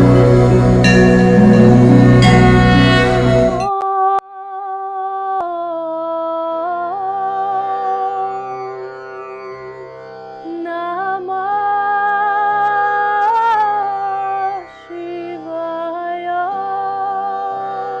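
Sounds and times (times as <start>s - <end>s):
slow gliding melody: 0.0s - 3.7s
steady drone: 0.0s - 3.7s.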